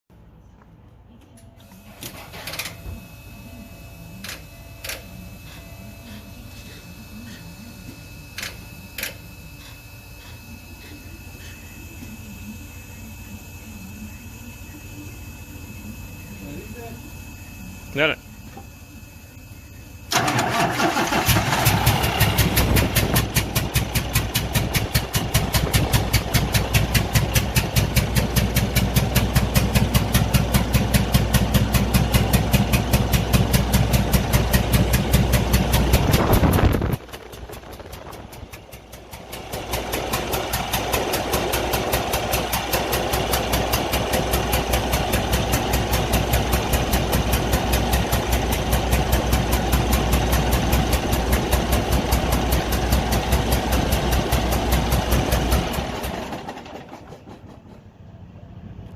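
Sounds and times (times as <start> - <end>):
diesel engine misfiring: 1.7 - 3.3, 14.2 - 58.9.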